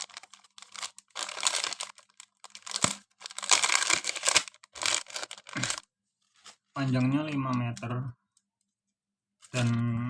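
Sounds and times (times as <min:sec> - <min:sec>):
plastic packaging crinkling: 0:00.0 - 0:07.9.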